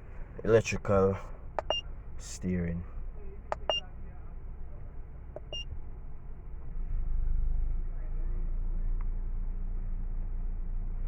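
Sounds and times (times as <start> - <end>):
steady low rumble: 0.0 - 8.7
electronic beeps: 1.6 - 1.8, 3.5 - 3.8, 5.4 - 5.7.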